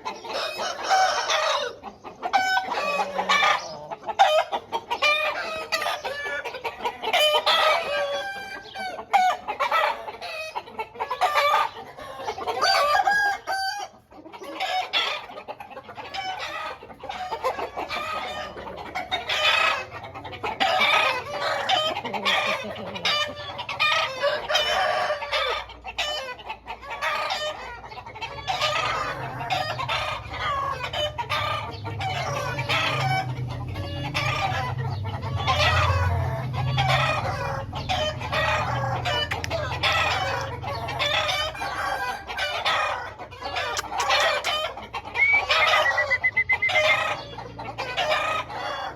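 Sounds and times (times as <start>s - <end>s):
chickens clucking: 0.0s - 48.9s
rooster crowing: 0.2s - 1.8s, 12.5s - 14.0s, 20.6s - 26.2s, 35.4s - 44.6s, 45.2s - 47.2s.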